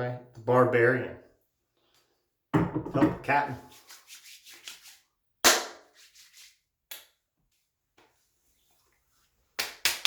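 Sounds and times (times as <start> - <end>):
hands slapping face: 5.4 - 5.9, 6.9 - 7.2, 9.6 - 10.0.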